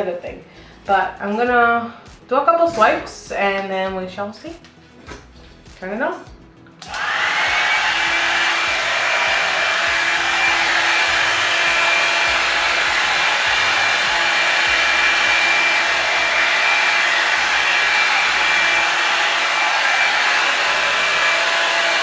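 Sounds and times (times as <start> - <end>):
hair dryer brush whining: 6.8 - 22.0.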